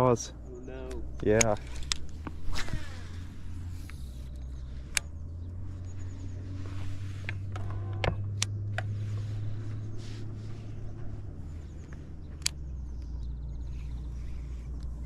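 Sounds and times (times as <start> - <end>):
boat motor humming: 0.0 - 15.0
sharp clicks: 0.8 - 3.0, 3.8 - 5.2, 11.8 - 13.3.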